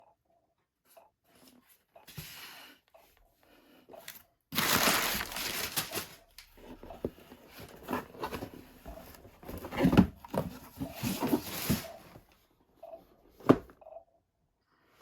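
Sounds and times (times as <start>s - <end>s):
packaging rustling: 4.6s - 6.5s
cardboard scraping: 4.6s - 12.2s.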